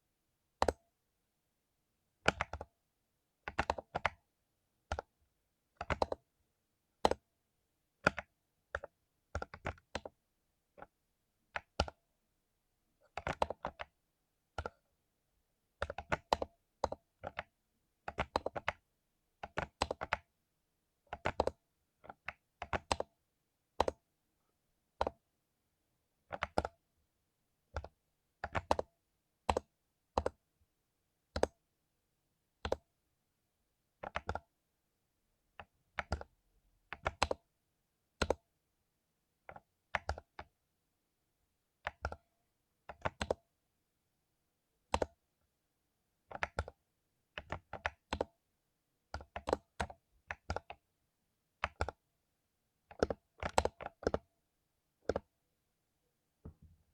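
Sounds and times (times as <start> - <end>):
mechanical keyboard typing: 2.3 - 2.7, 3.5 - 4.2, 5.8 - 6.2, 8.0 - 10.2, 13.1 - 14.0, 15.8 - 17.5, 18.1 - 18.8, 19.4 - 20.3, 21.1 - 23.1, 26.3 - 26.8, 27.8 - 28.8, 29.5 - 30.4, 32.6 - 32.9, 34.0 - 34.4, 35.6 - 36.3, 36.9 - 37.4, 38.2 - 38.4, 39.5 - 40.5, 41.8 - 42.2, 42.9 - 43.4, 44.9 - 45.2, 46.3 - 46.8, 47.4 - 48.3, 49.1 - 50.8, 51.6 - 52.0, 52.9 - 54.3, 55.0 - 55.3.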